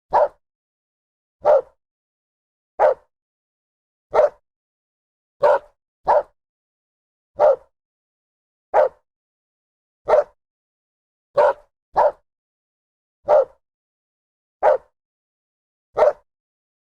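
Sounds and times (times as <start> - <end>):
dog barking: 0.1 - 0.4, 1.4 - 1.8, 2.8 - 3.1, 4.1 - 4.4, 5.4 - 6.4, 7.4 - 7.7, 8.7 - 9.0, 10.0 - 10.4, 11.4 - 12.2, 13.2 - 13.6, 14.6 - 15.0, 16.0 - 16.3.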